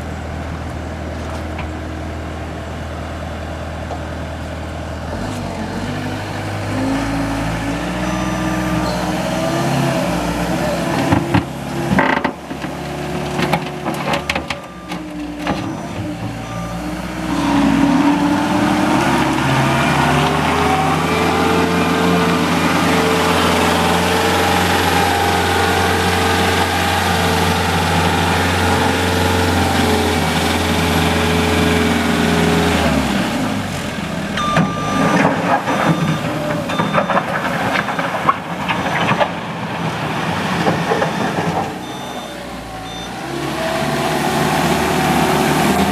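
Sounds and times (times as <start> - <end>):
diesel engine revving: 1.9 - 45.9
knocks and clatter: 11.0 - 16.4, 34.4 - 41.8.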